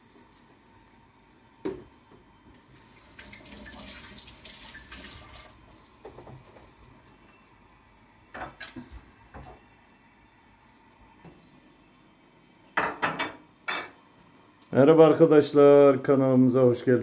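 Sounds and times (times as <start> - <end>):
water running in a stream: 2.8 - 5.8.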